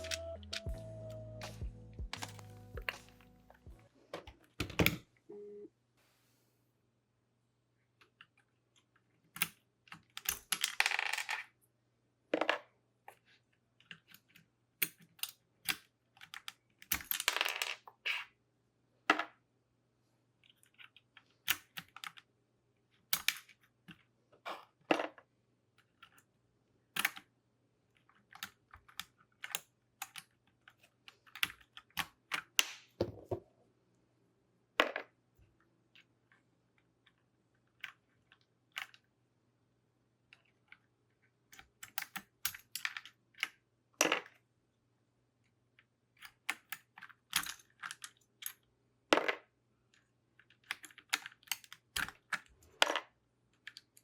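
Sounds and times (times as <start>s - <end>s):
keycaps clattering: 0.0s - 5.0s.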